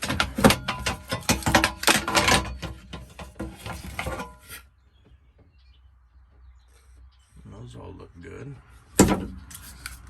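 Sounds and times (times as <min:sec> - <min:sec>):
small plastic and metal parts clattering: 0:00.0 - 0:04.6.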